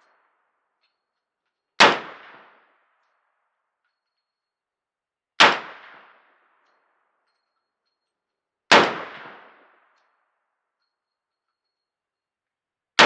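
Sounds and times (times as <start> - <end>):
gunshots echoing: 5.4 - 6.2, 8.7 - 9.7.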